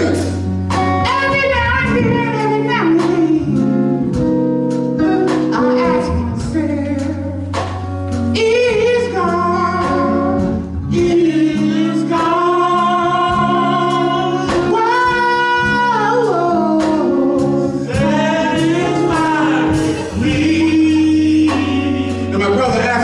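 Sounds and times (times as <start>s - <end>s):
held accompaniment chords: 0.0s - 23.0s
preacher singing: 10.7s - 23.0s.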